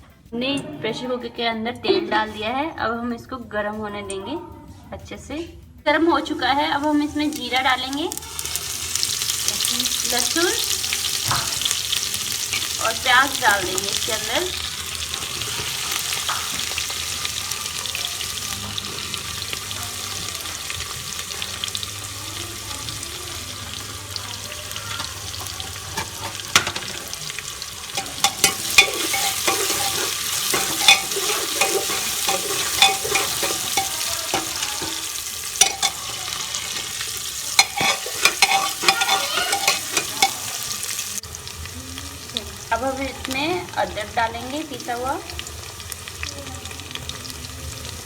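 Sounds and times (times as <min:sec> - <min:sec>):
food sizzling in hot oil: 0:06.0 - 0:48.0
spoon scraping metal pot: 0:10.6 - 0:19.7, 0:24.8 - 0:41.0.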